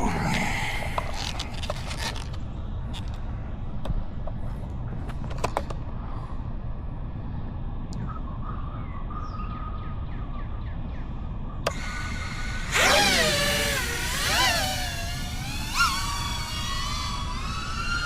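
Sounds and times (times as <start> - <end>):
low background rumble: 0.0 - 18.0
bird chirping: 8.0 - 11.6.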